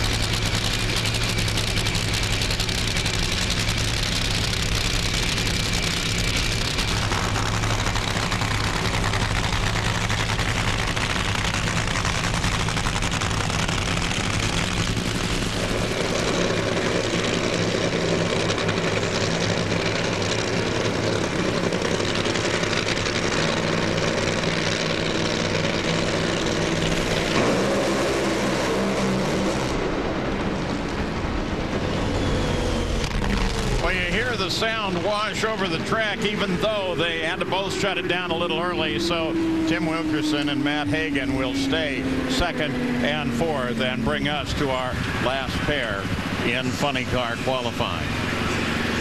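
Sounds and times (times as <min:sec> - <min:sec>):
loud drag racing engines: 0:00.0 - 0:49.0.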